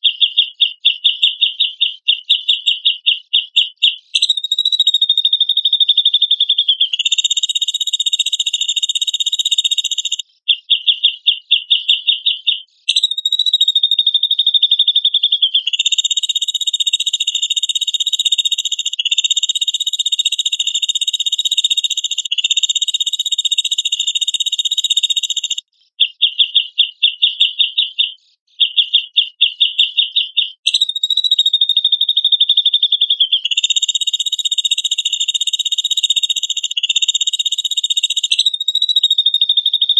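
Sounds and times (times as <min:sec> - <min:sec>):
high buzzing bird trill: 0:00.0 - 0:10.2, 0:10.8 - 0:25.7, 0:28.7 - 0:39.9
bird call quick pulses: 0:02.1 - 0:10.2, 0:12.9 - 0:25.6, 0:30.6 - 0:32.5, 0:33.3 - 0:39.9.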